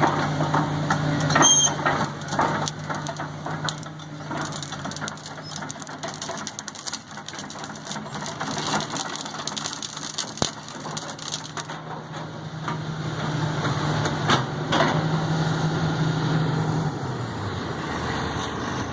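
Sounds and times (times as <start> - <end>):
wood crackling and snapping: 0.0 - 12.8
backhoe engine running: 0.0 - 18.9.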